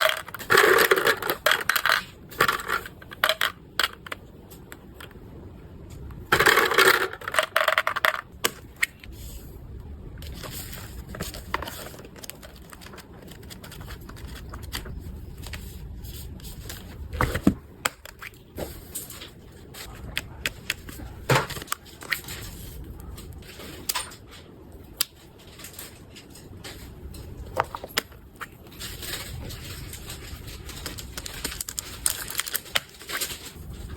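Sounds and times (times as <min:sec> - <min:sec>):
packaging crinkling: 0:10.2 - 0:16.0, 0:28.6 - 0:33.9.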